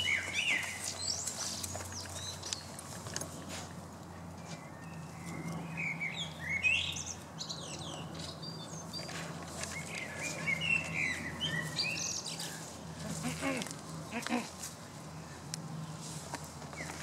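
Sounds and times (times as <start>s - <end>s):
birds chirping and singing: 0.0s - 2.8s, 4.4s - 13.2s.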